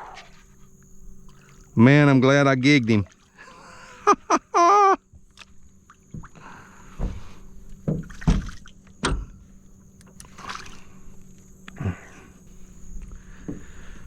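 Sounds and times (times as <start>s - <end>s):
faint water movement: 0.0s - 14.0s
knocks against boat hull: 7.0s - 9.3s.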